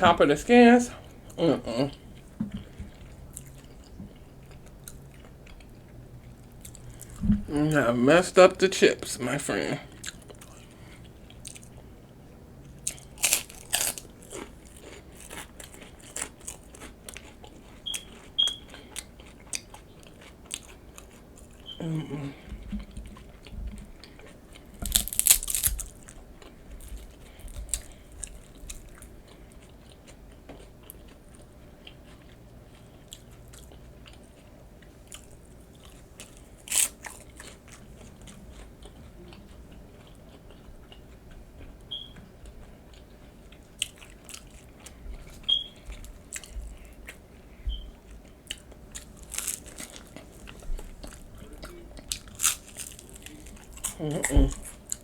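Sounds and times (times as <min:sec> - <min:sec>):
quiet chewing: 0:00.9 - 0:07.8, 0:09.8 - 0:55.0
crunching tortilla chips: 0:12.8 - 0:21.7, 0:24.2 - 0:30.0, 0:33.1 - 0:39.0, 0:48.4 - 0:55.0.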